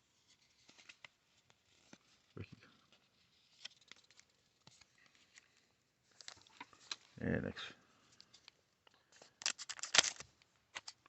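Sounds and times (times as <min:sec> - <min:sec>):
cards clicking and rustling: 0:08.2 - 0:11.0.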